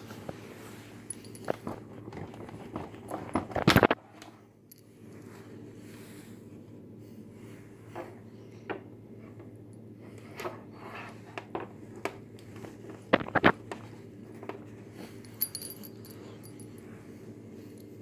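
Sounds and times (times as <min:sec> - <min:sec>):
steady low hum: 0:00.0 - 0:18.0
handling clicks and knocks: 0:01.1 - 0:04.0, 0:11.5 - 0:16.8.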